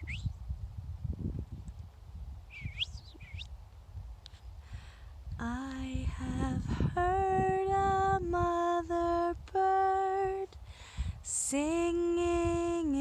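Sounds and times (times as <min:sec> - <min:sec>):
woman singing alone: 0:05.4 - 0:10.6, 0:11.2 - 0:13.0.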